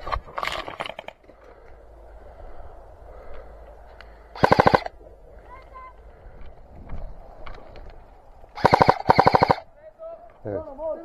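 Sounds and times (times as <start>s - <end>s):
airsoft gun full-auto burst: 4.4s - 4.9s, 8.6s - 9.6s.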